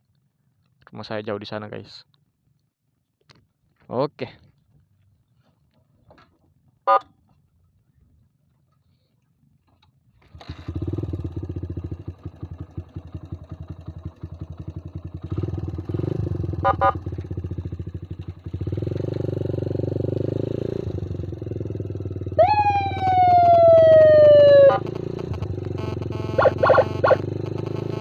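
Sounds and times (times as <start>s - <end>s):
motorcycle engine running: 10.4s - 28.0s
falling siren tone: 22.3s - 28.0s
electronic double beep: 24.6s - 28.0s.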